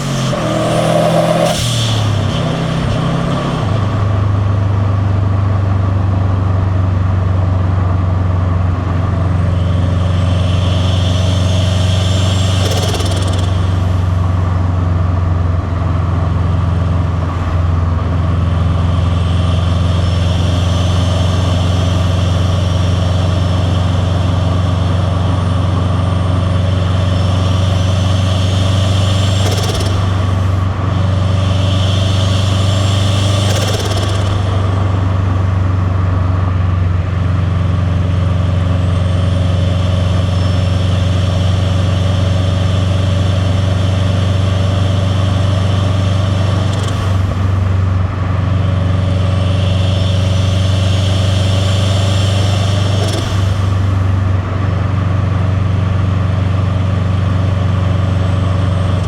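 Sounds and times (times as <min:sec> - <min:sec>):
turbo flutter and air rush: 0:00.0 - 0:04.8, 0:09.1 - 0:16.2, 0:16.8 - 0:37.8
car engine deep rumble: 0:00.0 - 0:59.0.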